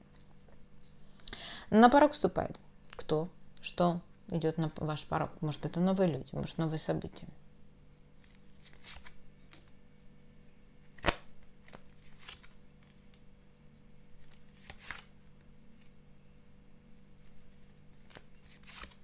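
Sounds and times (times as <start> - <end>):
cards rustling: 8.2 - 9.7, 11.0 - 13.3, 14.2 - 15.1, 17.2 - 19.0.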